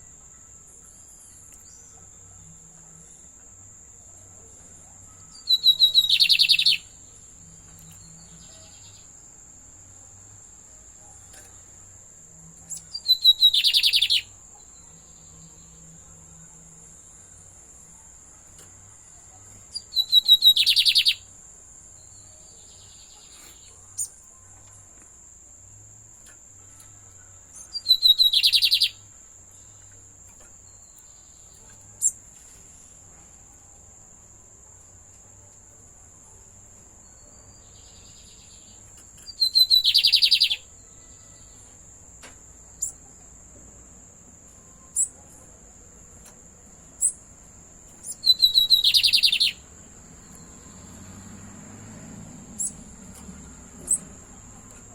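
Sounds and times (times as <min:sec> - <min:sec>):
bird singing: 0:00.0 - 0:25.0, 0:25.6 - 0:32.5, 0:33.1 - 0:54.9
bird chips: 0:26.2 - 0:29.0, 0:48.0 - 0:49.6.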